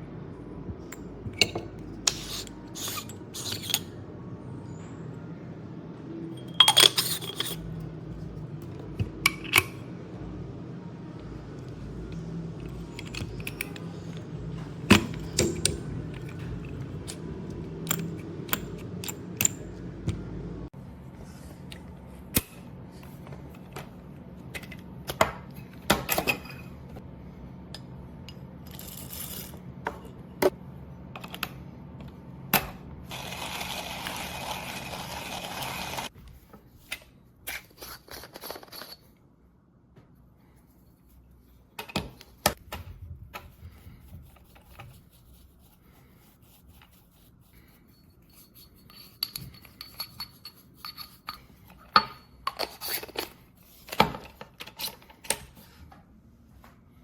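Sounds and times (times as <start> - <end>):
low hum: 0.0 - 25.0.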